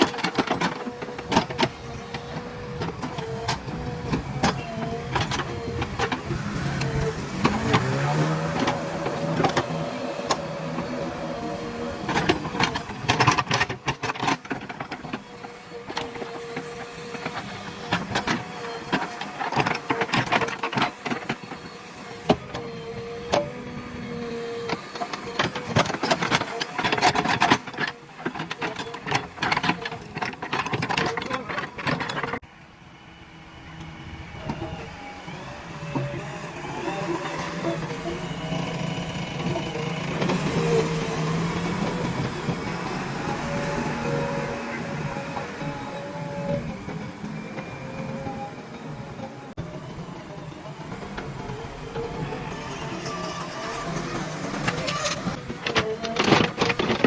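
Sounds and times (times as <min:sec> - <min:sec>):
diesel engine running: 0:00.8 - 0:13.1
metallic clanks and scrapes digging: 0:52.6 - 0:57.0.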